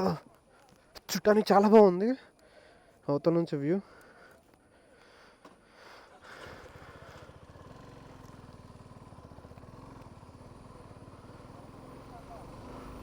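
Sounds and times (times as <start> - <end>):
vehicle engine running: 6.2 - 13.0.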